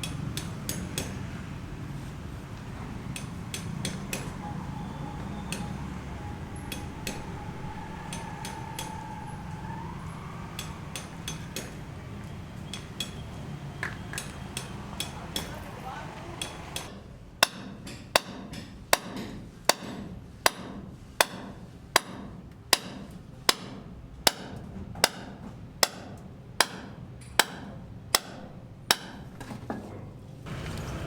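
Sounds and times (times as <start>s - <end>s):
hammer blows: 2.8s - 13.4s.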